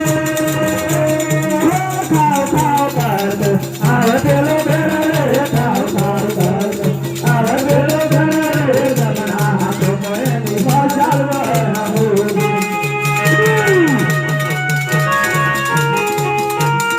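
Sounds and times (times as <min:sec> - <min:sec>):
rattling shaker: 0:00.0 - 0:16.9
wavering melody line: 0:12.1 - 0:16.9.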